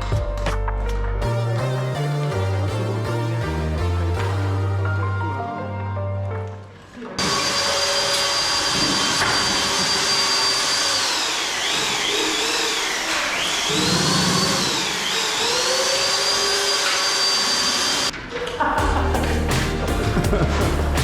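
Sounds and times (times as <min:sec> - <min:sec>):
high-speed power tool whining: 0:07.2 - 0:18.1.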